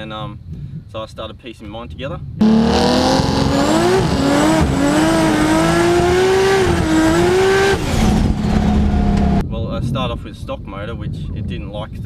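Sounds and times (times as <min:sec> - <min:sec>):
car engine at high revs: 0:02.4 - 0:09.4.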